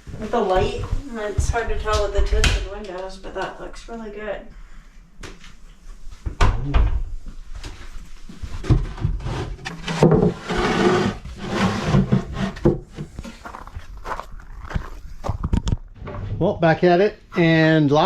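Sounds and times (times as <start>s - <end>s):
wooden drawers knocking and scraping: 8.6s - 13.1s.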